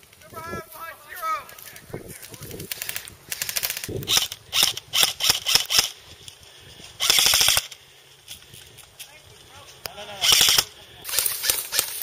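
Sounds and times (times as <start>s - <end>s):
airsoft guns firing bursts: 2.7s - 6.0s, 7.0s - 7.8s, 10.2s - 12.0s.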